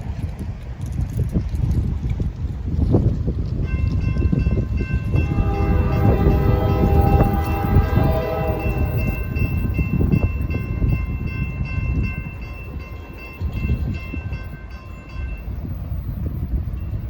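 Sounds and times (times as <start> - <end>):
passing train rumble: 0.0 - 17.0
locomotive air horn: 5.0 - 9.7.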